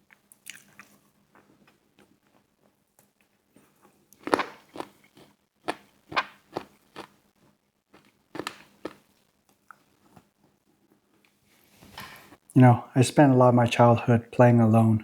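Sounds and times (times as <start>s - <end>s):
crunchy bites and chewing: 4.2s - 7.2s, 7.9s - 9.2s.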